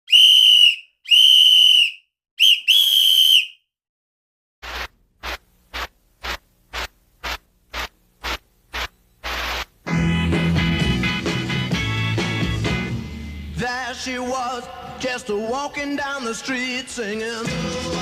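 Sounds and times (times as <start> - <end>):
loud whistle blasts: 0.1 - 3.6
upbeat band music: 7.8 - 13.8.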